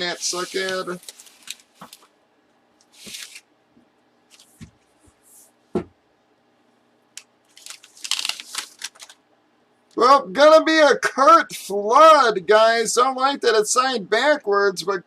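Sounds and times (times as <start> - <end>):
packaging crinkling and rustling: 0.0 - 2.2, 2.8 - 3.4, 7.4 - 9.2
knock: 5.7 - 6.0.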